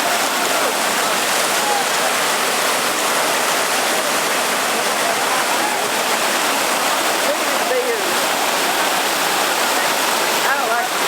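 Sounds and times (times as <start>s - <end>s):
whitewater rapids rushing: 0.0s - 11.0s.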